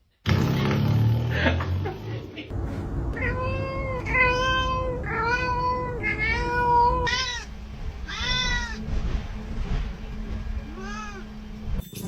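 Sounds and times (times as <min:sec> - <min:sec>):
cat meowing: 0:03.2 - 0:08.8, 0:10.7 - 0:11.3.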